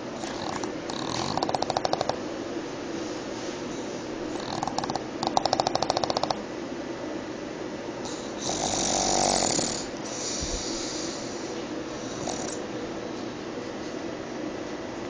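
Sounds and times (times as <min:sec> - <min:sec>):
dog snoring rattle: 0:00.0 - 0:02.2, 0:04.3 - 0:06.4, 0:08.0 - 0:12.6
hissy breaths: 0:08.0 - 0:12.6.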